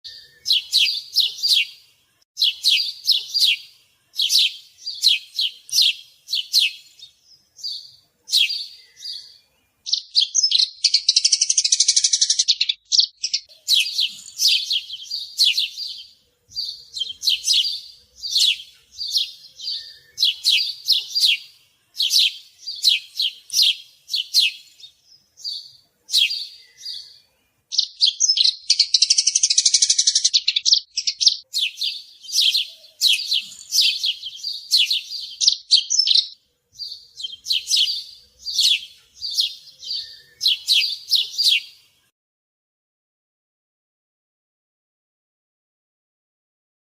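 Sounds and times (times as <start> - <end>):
sparrow chirping: 0.1 - 41.9.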